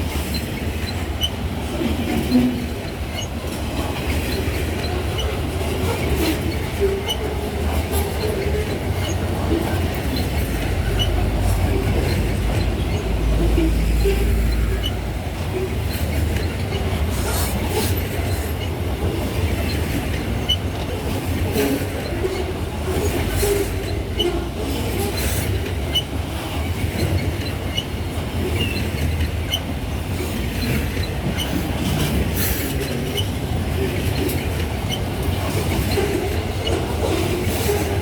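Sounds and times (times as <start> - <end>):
train wheels rumbling on rail: 0.0 - 38.0
high wheel squeaks: 4.2 - 18.8.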